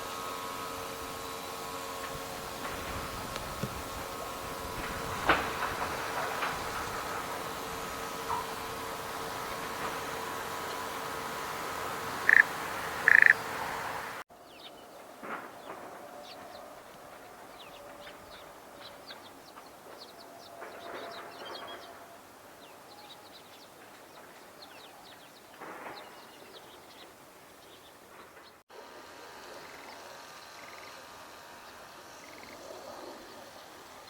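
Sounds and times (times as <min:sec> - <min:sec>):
rough bird call: 0:12.1 - 0:14.1
high bird twittering: 0:12.2 - 0:13.5.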